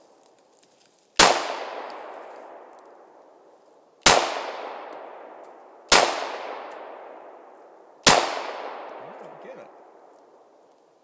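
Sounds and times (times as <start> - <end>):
pistol shots with echo: 1.2 - 2.6, 4.0 - 7.4, 8.0 - 10.1.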